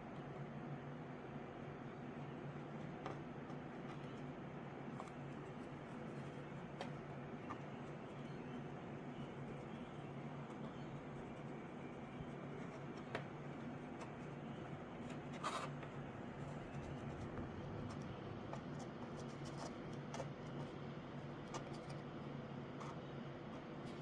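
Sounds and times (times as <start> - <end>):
scratching and rubbing on surface: 9.2 - 20.8.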